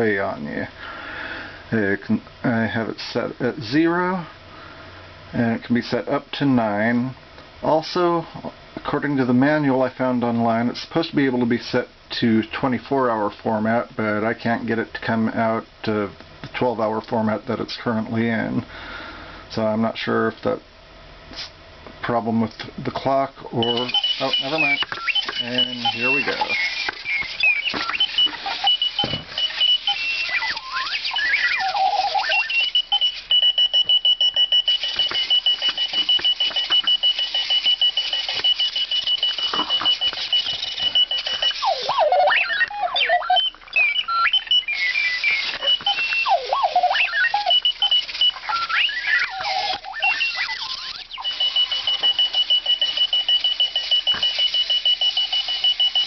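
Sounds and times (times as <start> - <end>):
electronic alarm beeps and chirps: 23.6 - 56.0
wheel motors whirring: 23.6 - 56.0.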